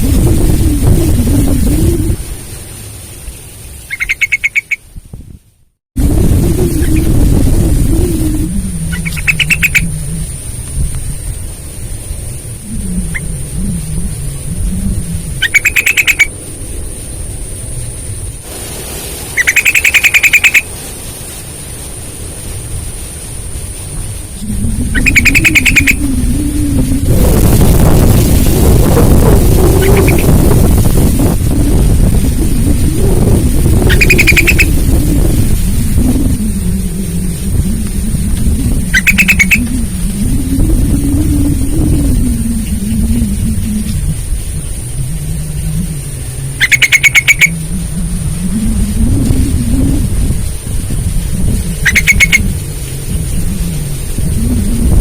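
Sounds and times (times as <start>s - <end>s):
low rumble: 0.0s - 3.9s, 5.0s - 19.4s, 20.7s - 55.0s
bird calling sharp repeated notes: 3.8s - 4.9s, 7.9s - 10.3s, 12.6s - 16.3s, 19.3s - 20.7s, 24.4s - 26.8s, 29.6s - 30.5s, 33.8s - 35.2s, 35.9s - 44.0s, 46.5s - 50.1s, 51.6s - 52.6s.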